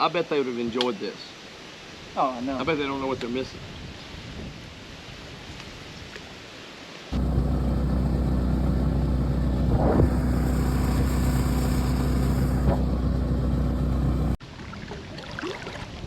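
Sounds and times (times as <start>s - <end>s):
outboard motor running: 7.2s - 14.4s.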